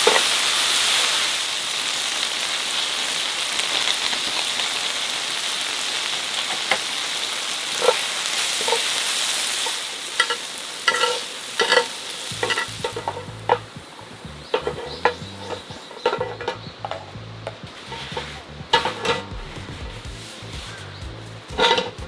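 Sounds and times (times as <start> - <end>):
food sizzling in a frying pan: 0.0 - 22.0
utensil scraping a pan: 7.8 - 22.0.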